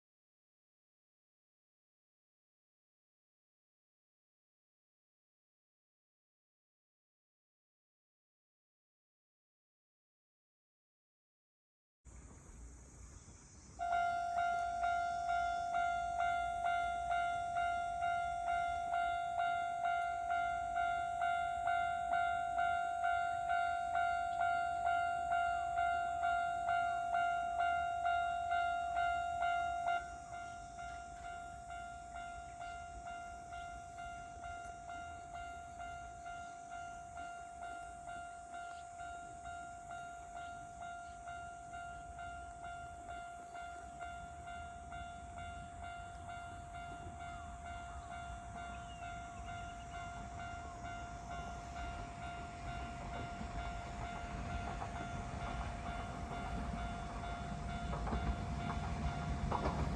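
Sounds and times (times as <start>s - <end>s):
train rumbling: 12.1s - 59.9s.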